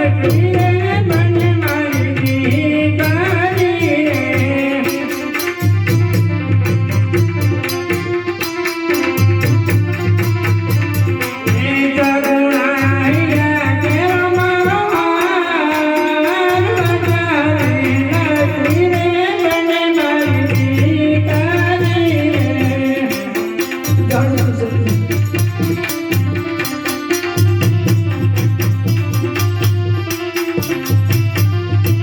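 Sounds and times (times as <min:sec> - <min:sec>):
fast hand percussion: 0:00.0 - 0:32.0
pulsing low drum beat: 0:05.6 - 0:11.9, 0:20.2 - 0:32.0.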